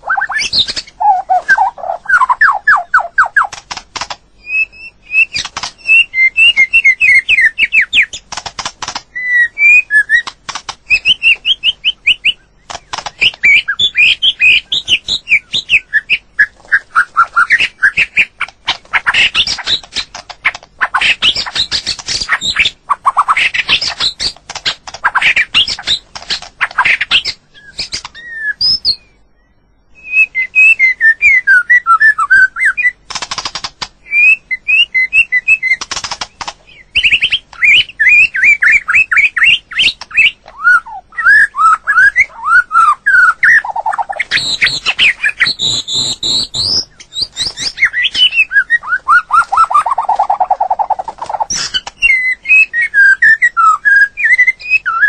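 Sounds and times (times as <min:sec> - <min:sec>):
bird singing whistled notes: 0:00.0 - 0:03.5, 0:04.4 - 0:08.2, 0:09.1 - 0:10.3, 0:10.9 - 0:18.4, 0:26.8 - 0:33.0, 0:34.0 - 0:55.0.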